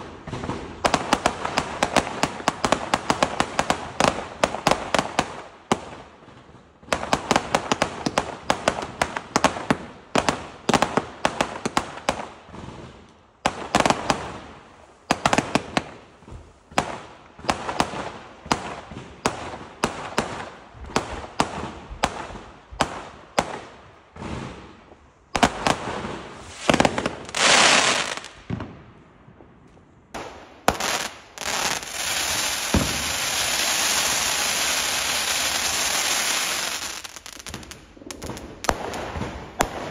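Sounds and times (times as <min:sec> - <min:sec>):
fireworks cracking and popping: 0:15.1 - 0:39.9
fireworks hiss: 0:25.9 - 0:28.4, 0:30.2 - 0:39.9.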